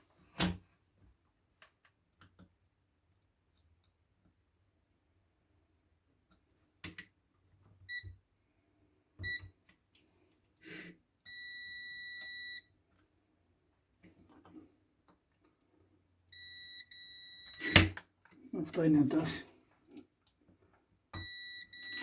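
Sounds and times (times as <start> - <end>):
continuity tester beeping: 11.3 - 12.6, 16.4 - 17.8, 21.2 - 22.0.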